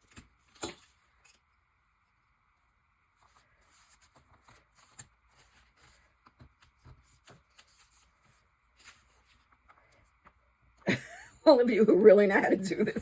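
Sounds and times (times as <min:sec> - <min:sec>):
paper rustling: 0:03.2 - 0:10.3.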